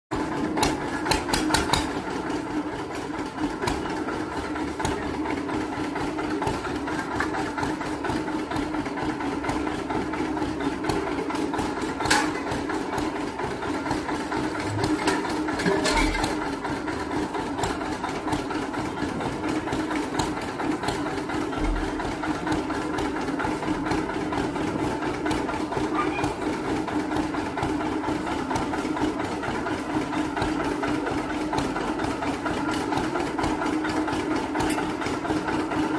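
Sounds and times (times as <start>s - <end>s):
juicer motor droning: 0.1s - 35.9s
sharp clicks and knocks: 0.6s - 2.0s, 14.5s - 16.5s.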